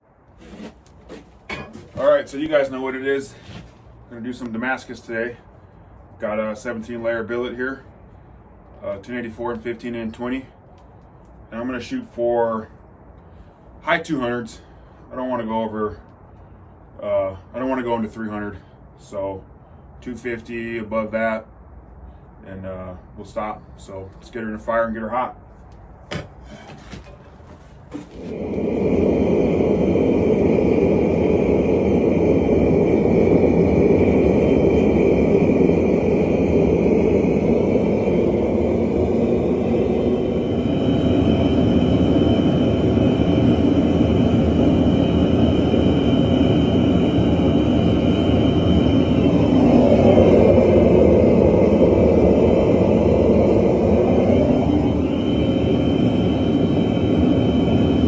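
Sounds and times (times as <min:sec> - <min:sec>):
faint high whine: 0:00.0 - 0:21.5, 0:27.9 - 0:58.0
forge roaring: 0:00.4 - 0:05.1, 0:27.9 - 0:58.0.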